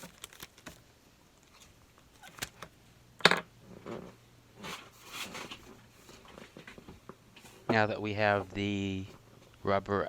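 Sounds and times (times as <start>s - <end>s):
rubber sheet and packaging rustling: 0.0s - 2.6s.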